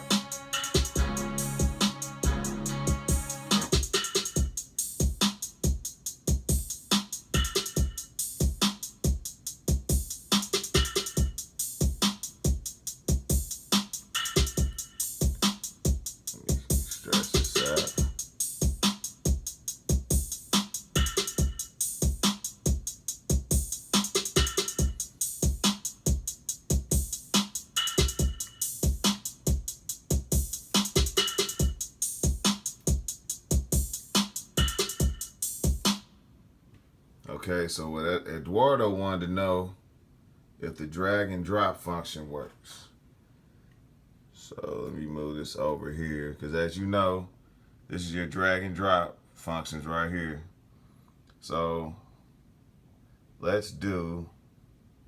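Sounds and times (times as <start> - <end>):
electronic hip-hop beat: 0.0 - 36.0.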